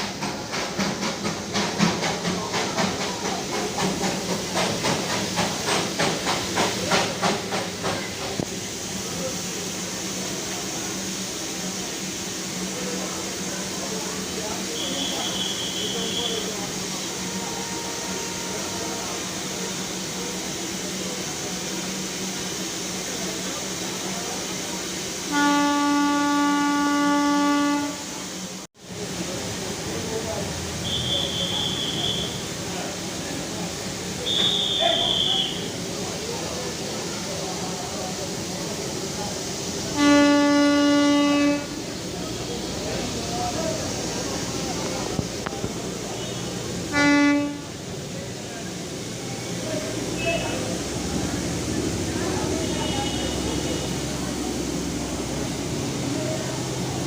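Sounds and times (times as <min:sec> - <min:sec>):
steady steam hiss: 0:00.0 - 0:57.0
steam locomotive chuffing: 0:00.0 - 0:57.0
train horn blast: 0:14.8 - 0:20.4, 0:25.3 - 0:28.2, 0:39.9 - 0:41.9, 0:46.1 - 0:47.8, 0:52.5 - 0:54.1.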